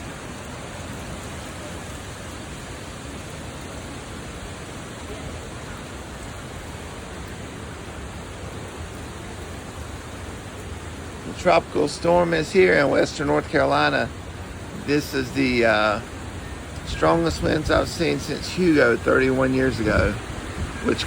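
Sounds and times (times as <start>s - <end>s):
strong wind rushing: 11.2s - 21.0s
wind rumble on microphone: 12.0s - 21.0s.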